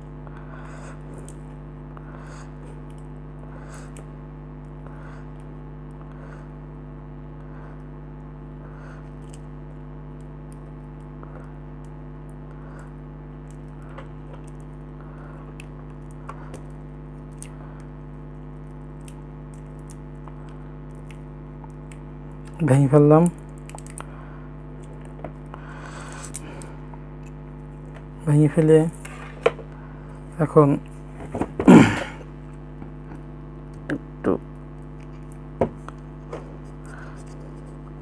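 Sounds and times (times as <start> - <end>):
low electrical hum: 0.0 - 38.0
small clicks and crunches: 9.1 - 9.5, 13.4 - 14.8, 15.5 - 22.6, 23.2 - 24.1, 24.7 - 28.1.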